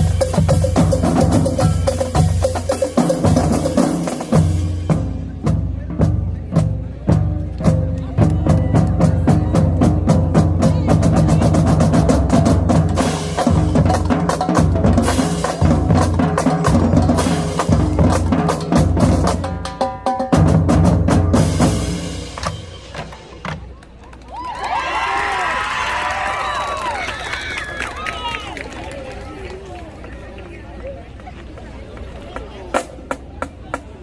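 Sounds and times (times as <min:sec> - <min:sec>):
marching bass drums: 0:00.0 - 0:23.8.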